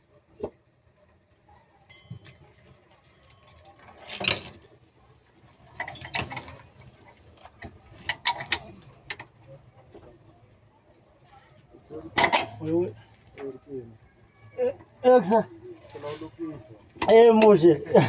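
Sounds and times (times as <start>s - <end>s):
knocks and clanks: 12.1s - 12.6s.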